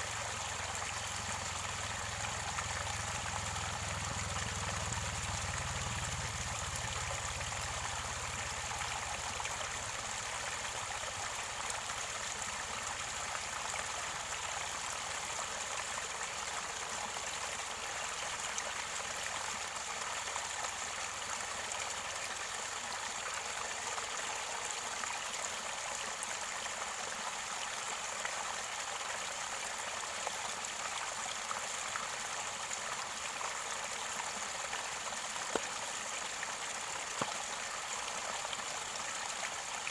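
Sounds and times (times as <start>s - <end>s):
water splashes and drips: 0.0s - 15.2s, 31.7s - 39.9s
stream water flowing and gurgling: 0.0s - 39.9s.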